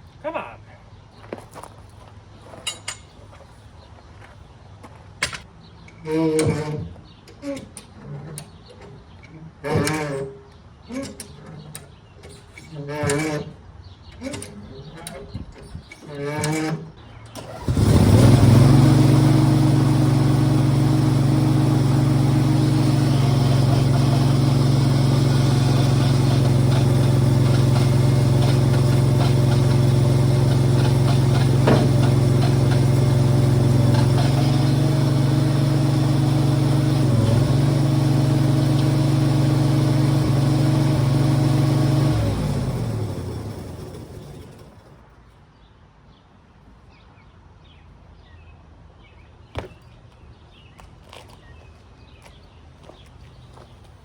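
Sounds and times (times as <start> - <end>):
engine idling: 17.4 - 45.0.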